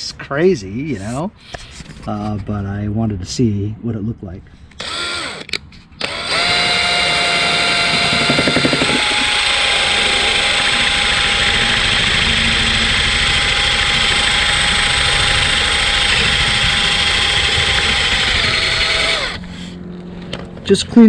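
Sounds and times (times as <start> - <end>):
handheld power tool running: 4.8 - 19.8.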